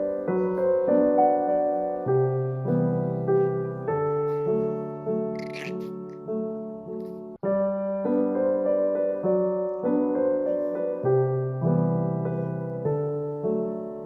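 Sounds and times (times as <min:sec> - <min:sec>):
solo piano music: 0:00.0 - 0:14.0.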